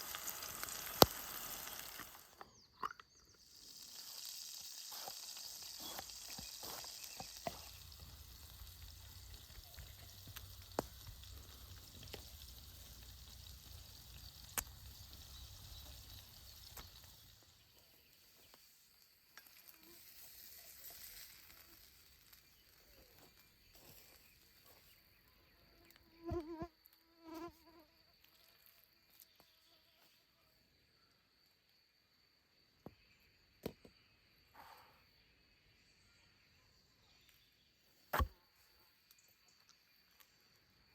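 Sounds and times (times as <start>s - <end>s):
fire crackling: 0.0s - 2.4s, 3.4s - 23.4s
food sizzling over fire: 0.0s - 2.4s, 3.4s - 24.3s.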